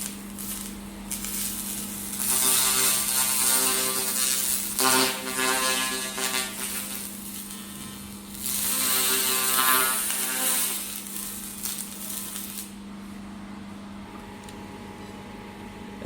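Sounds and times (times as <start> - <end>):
laser cleaner crackling hiss: 0.0 - 12.8
steady machine hum: 0.0 - 16.0.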